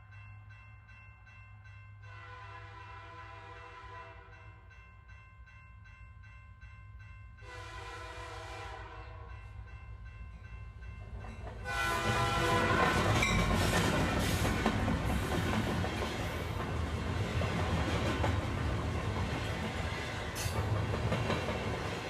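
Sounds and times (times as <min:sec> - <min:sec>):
train horn sounding: 0:02.1 - 0:04.5, 0:07.4 - 0:09.4, 0:11.6 - 0:13.5
train rushing past: 0:11.4 - 0:22.0.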